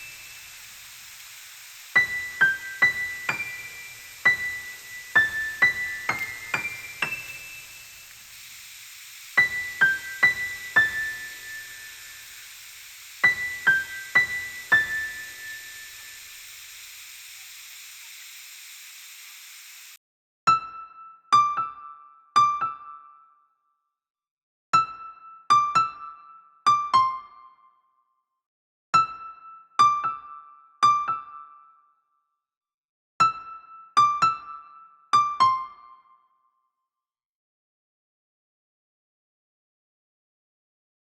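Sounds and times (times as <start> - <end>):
steady hiss: 0.0 - 20.0
electric piano notes: 2.0 - 8.2.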